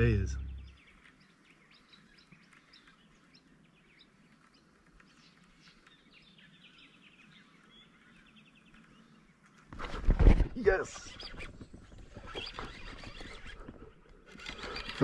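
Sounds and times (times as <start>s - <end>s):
faint birds chirping: 0.0s - 15.0s.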